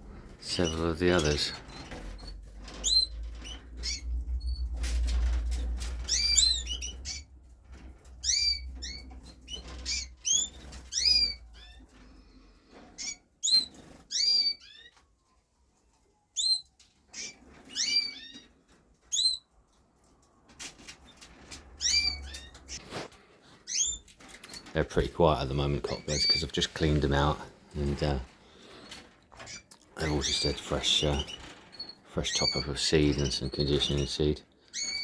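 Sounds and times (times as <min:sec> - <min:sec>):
canaries chirping: 0:00.4 - 0:15.1, 0:16.0 - 0:35.0.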